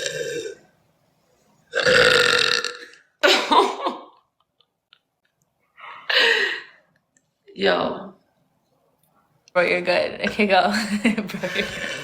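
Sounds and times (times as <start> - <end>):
girl burping: 1.8 - 3.0.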